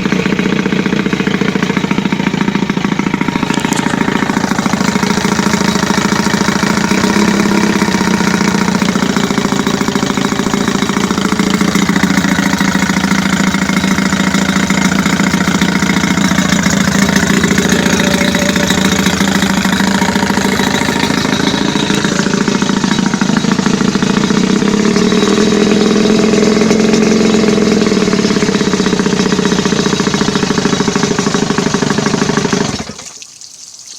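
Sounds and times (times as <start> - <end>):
outboard motor running: 0.0 - 33.2.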